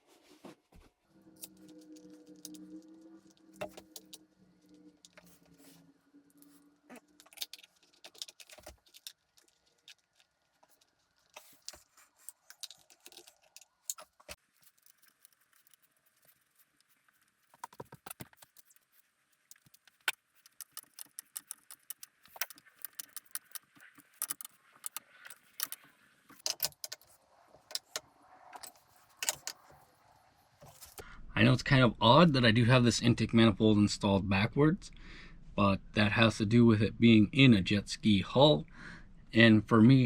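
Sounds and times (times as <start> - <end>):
metal parts and tools clinking: 6.4 - 16.6, 19.5 - 28.0, 28.6 - 29.7.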